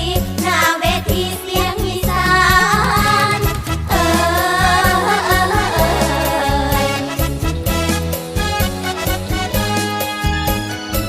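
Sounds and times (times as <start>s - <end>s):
woman singing pop song: 0.0s - 7.3s
band backing with bass: 0.0s - 11.0s
wavering melody line: 2.1s - 7.8s.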